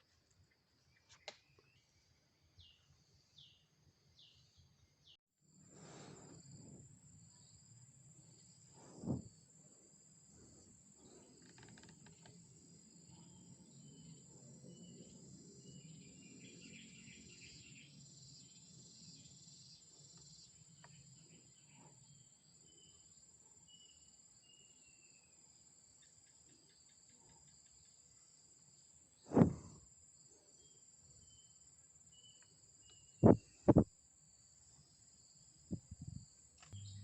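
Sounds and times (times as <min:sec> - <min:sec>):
insect trill: 0:00.0 - 0:37.0
faint high chirps: 0:36.0 - 0:37.0.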